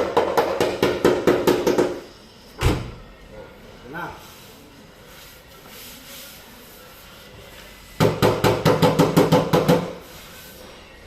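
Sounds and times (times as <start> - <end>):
hammer striking car body panel: 0.0 - 2.0, 8.0 - 10.0.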